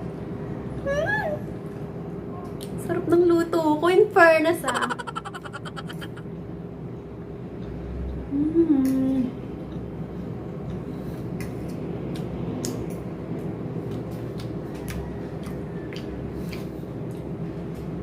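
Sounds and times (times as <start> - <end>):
steady low hum: 4.4 - 18.0
woman humming mmm: 8.3 - 9.3.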